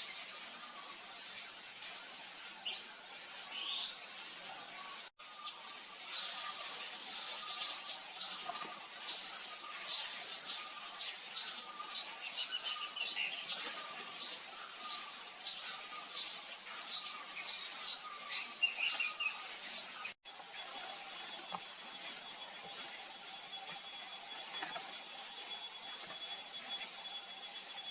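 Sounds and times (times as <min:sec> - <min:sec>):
bird buzzy chirps: 0:06.0 - 0:27.9.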